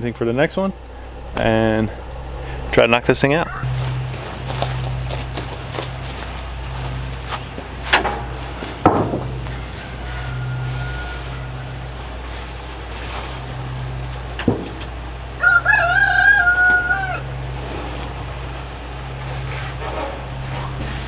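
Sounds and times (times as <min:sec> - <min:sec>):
rooster crowing: 0:03.4 - 0:12.9, 0:14.9 - 0:17.9.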